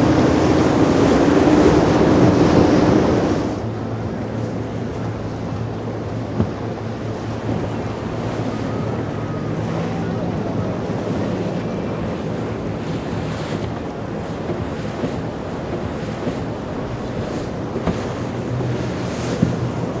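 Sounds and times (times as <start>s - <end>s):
wind buffeting microphone: 0.0s - 4.4s, 5.0s - 20.0s
boat engines running: 0.0s - 20.0s
waves and surf: 0.0s - 20.0s.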